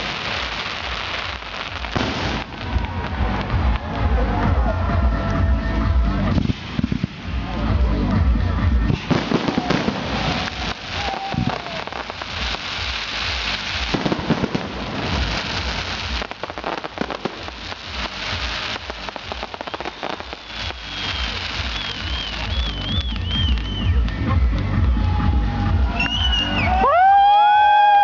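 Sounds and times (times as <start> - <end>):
fireworks crackling: 0.0 - 28.0
firework whistle: 8.9 - 24.0, 25.9 - 28.0.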